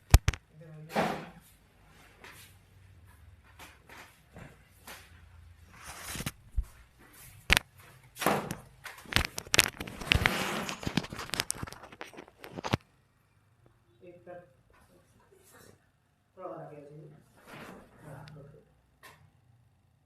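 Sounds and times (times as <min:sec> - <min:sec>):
sharp clicks and knocks: 0:00.0 - 0:00.5
rustling of clothing and bedding: 0:00.8 - 0:12.8, 0:17.1 - 0:18.5.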